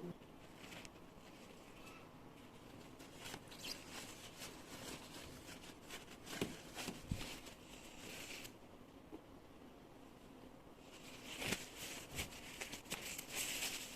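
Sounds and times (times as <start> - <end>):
rustling: 0.3 - 8.6, 10.8 - 13.9.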